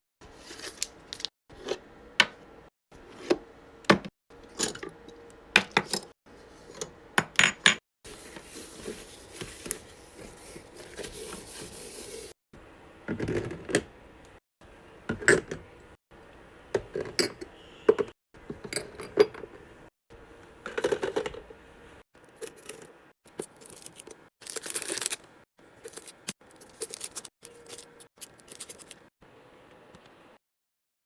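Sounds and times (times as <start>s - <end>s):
items clicking and clinking: 20.6s - 21.5s, 22.2s - 29.1s
plastic packaging rustling: 22.4s - 29.1s.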